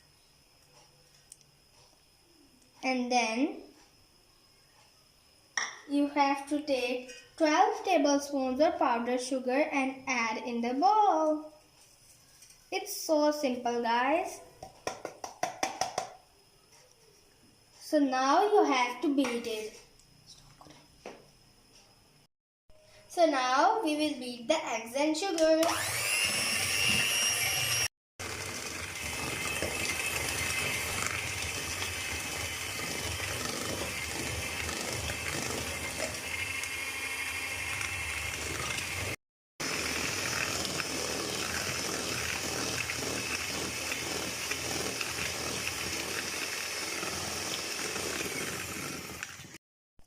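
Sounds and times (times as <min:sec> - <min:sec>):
electric hand beater whisking: 0:25.4 - 0:49.6.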